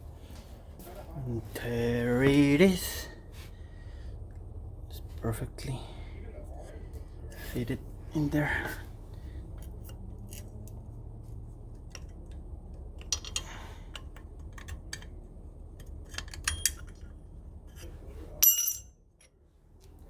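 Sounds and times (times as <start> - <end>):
steady low hum: 0.0 - 20.0
metal parts clicking: 13.0 - 15.2, 15.8 - 17.1
metal ringing clinks: 16.3 - 17.0, 18.4 - 19.0.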